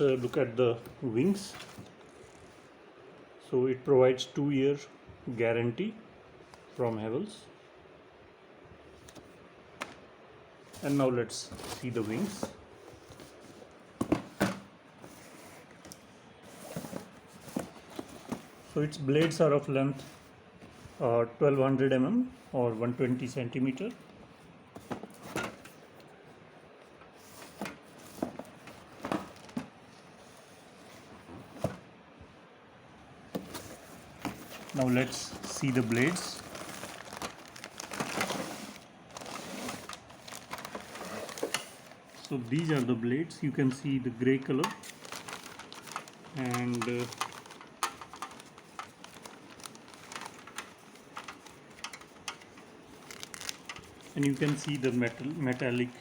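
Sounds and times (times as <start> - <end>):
packing rustling: 10.7 - 18.9, 27.2 - 31.8, 33.4 - 43.0, 44.2 - 56.0
fan parts knocking and clicking: 45.8 - 52.7.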